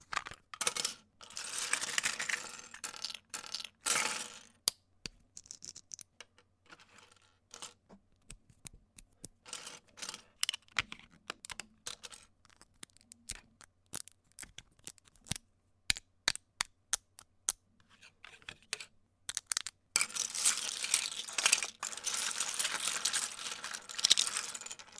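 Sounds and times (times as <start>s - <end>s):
plastic bricks clicking and rattling: 19.3s - 24.9s.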